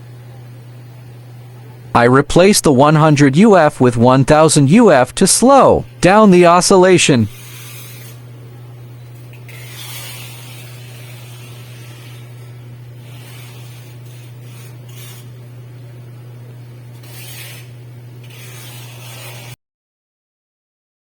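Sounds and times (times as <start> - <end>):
low electrical hum: 0.0 - 19.6
hiss: 7.4 - 8.2, 9.5 - 12.4.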